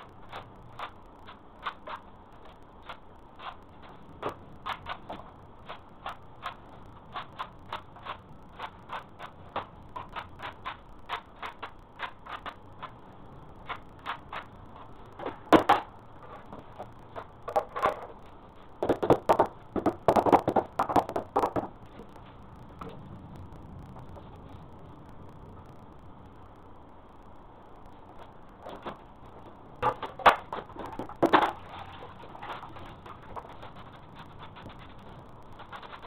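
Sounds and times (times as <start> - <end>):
heavy irregular knocks: 18.8 - 21.9.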